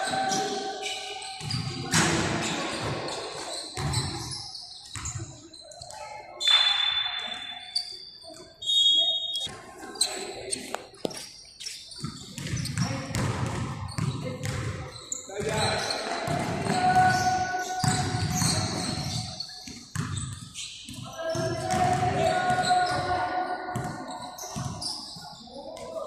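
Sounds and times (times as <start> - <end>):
short high squeaks: 6.4 - 10.6.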